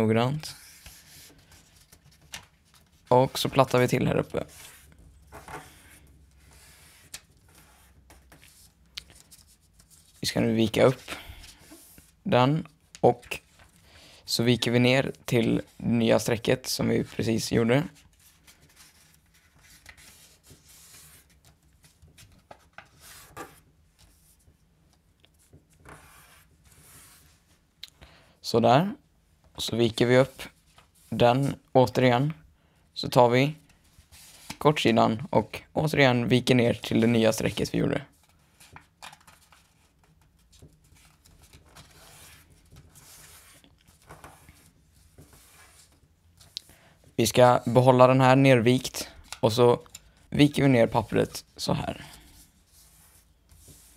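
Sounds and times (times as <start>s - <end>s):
paper rustling and folding: 0.5s - 13.9s, 15.0s - 27.6s, 36.6s - 47.9s, 49.1s - 53.9s
paper scrapes: 25.8s - 27.4s, 41.8s - 46.0s, 52.2s - 53.9s.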